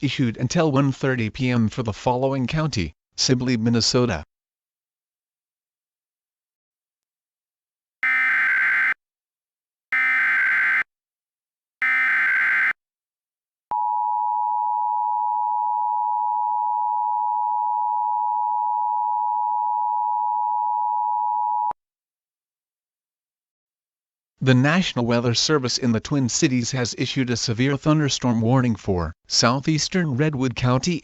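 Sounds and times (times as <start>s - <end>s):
screechy digital data tones: 8.0s - 9.0s, 10.0s - 10.9s, 11.8s - 12.8s.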